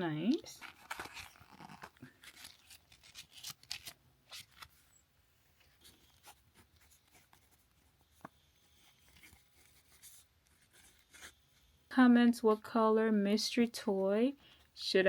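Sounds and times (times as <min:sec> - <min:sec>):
rustling and scraping of small objects: 0:00.0 - 0:11.8.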